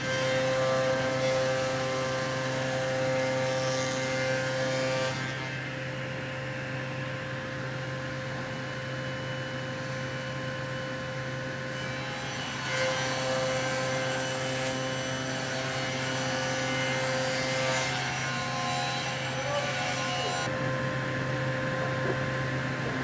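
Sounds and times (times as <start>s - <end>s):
woodworking machine running: 11.8s - 23.0s
cutter cutting wood: 12.6s - 20.8s.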